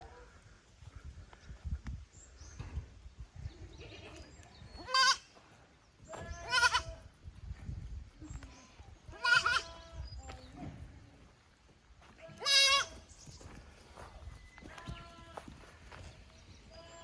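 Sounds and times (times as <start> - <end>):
kid goats bleating: 3.6 - 5.3, 6.1 - 7.1, 8.3 - 10.0, 12.2 - 13.1, 14.7 - 15.5.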